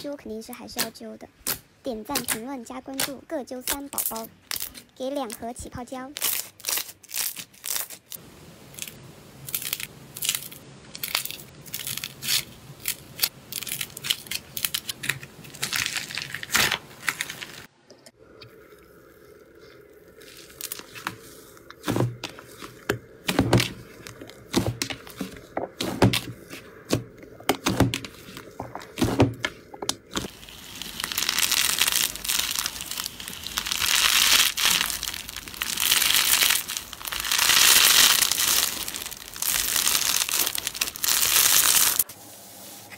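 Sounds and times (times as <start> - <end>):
slime clicking and crackling: 29.9 - 42.0.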